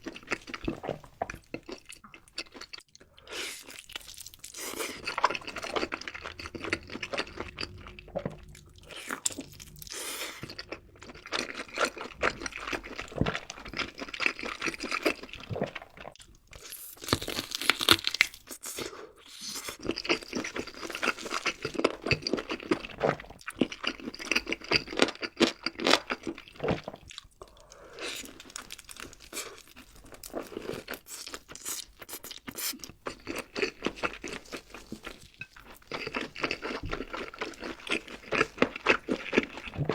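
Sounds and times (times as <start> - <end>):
chewing crunchy food: 0.0 - 39.9.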